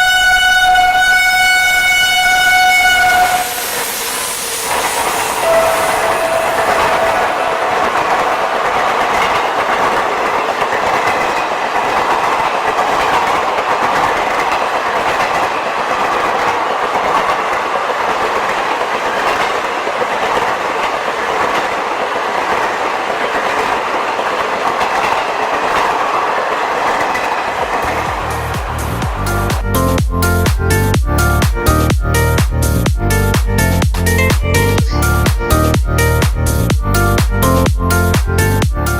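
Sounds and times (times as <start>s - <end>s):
train rolling past: 0.0s - 38.9s
wheels clicking over rail joints: 6.8s - 29.7s.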